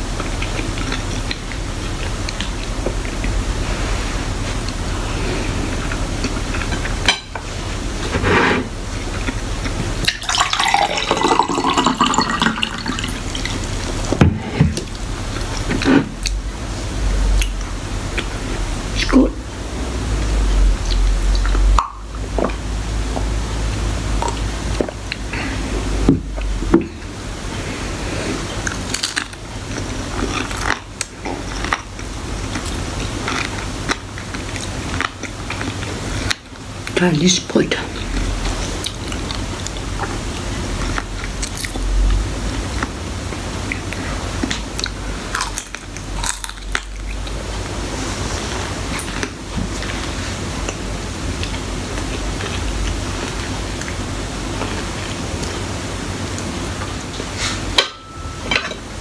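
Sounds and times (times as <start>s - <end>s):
chewing crispy bacon: 0.0s - 8.2s, 20.2s - 25.5s, 26.4s - 57.6s
steady hiss: 0.0s - 57.8s
drink pouring into a glass: 10.0s - 13.6s.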